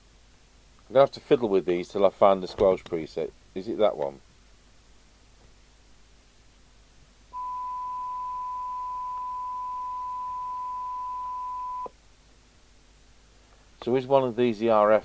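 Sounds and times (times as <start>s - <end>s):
steady radio test tone: 7.3s - 11.9s.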